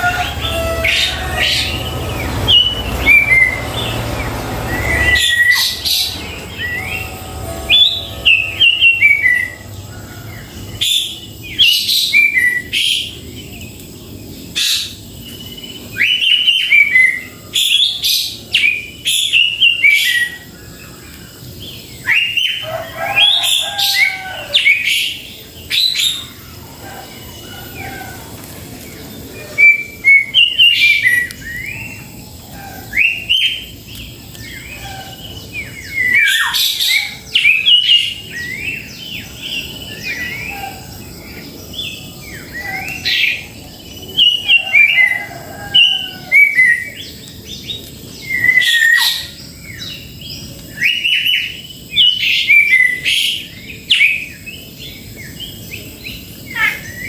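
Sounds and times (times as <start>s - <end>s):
bird chirping and whistling: 0.0s - 9.6s, 14.6s - 20.5s, 22.0s - 22.6s, 29.5s - 32.1s, 32.8s - 33.8s, 34.4s - 40.8s, 48.1s - 50.1s, 50.7s - 54.4s.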